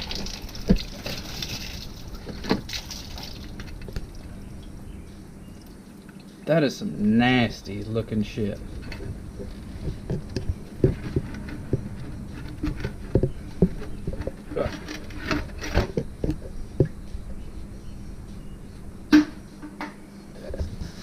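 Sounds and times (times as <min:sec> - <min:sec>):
faint steady hum: 0:00.0 - 0:21.0
clicks and knocks of hand work: 0:08.8 - 0:17.0.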